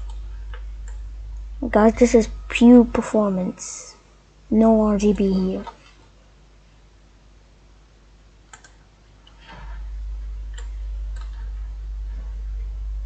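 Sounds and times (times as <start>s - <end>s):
deep low rumble: 0.0s - 3.0s, 9.5s - 13.0s
computer mouse clicking: 8.5s - 8.8s, 10.5s - 11.5s.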